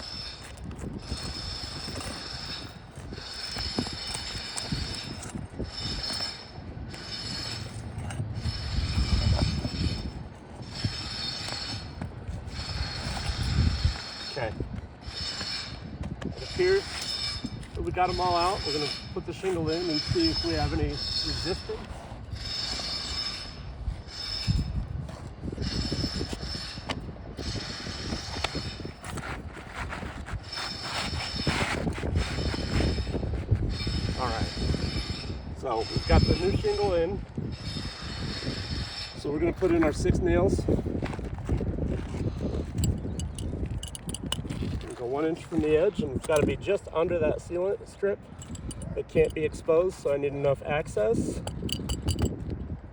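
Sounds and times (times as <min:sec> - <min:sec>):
pry bar scraping shingles: 0:00.0 - 0:34.0, 0:41.0 - 0:46.6, 0:48.3 - 0:49.4.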